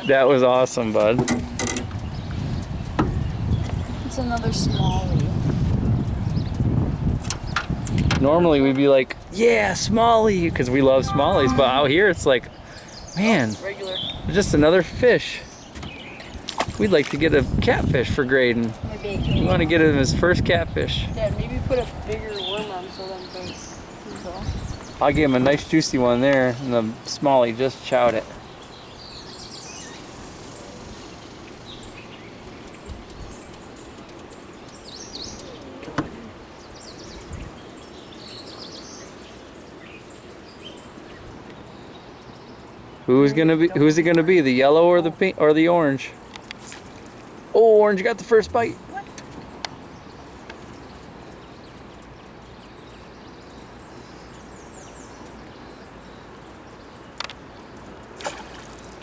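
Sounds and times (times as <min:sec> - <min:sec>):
small birds chirping: 0:00.0 - 0:59.0
steady background hiss: 0:21.2 - 0:59.0.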